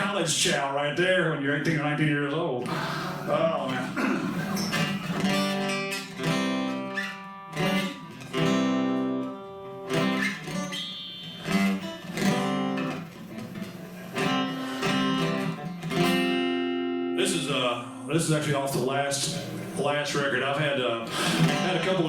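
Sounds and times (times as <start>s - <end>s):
acoustic guitar strumming chords: 2.6s - 22.0s.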